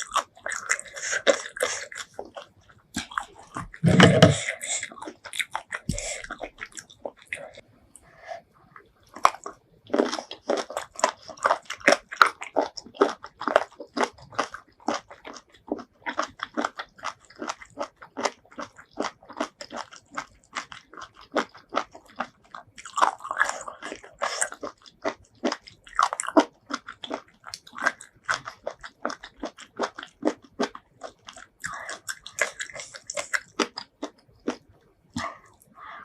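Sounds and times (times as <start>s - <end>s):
wet mouth sounds: 0.0s - 14.3s, 29.5s - 36.0s
chewing and crunching: 0.0s - 36.0s.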